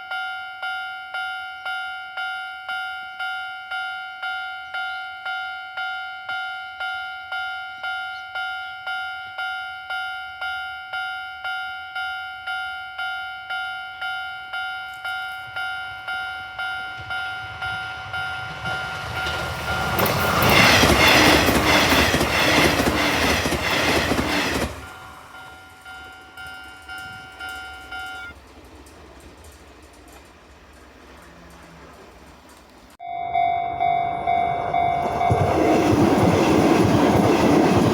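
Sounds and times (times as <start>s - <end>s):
electric train passing: 11.4s - 37.9s
level crossing bell dinging: 24.9s - 28.4s, 33.0s - 36.0s.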